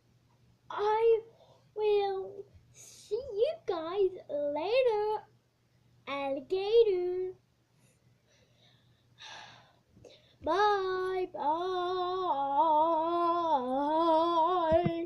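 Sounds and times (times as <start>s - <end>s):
child breath: 8.3s - 10.4s.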